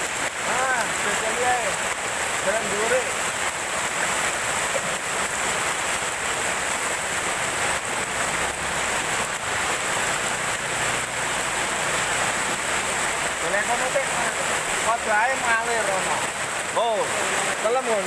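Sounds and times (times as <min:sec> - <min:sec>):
heavy rain pouring: 0:00.0 - 0:18.0.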